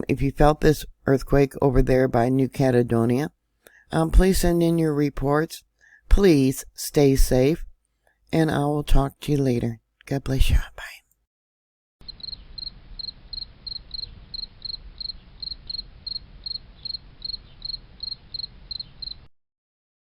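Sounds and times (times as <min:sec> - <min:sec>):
cricket chirping: 0:12.0 - 0:19.3.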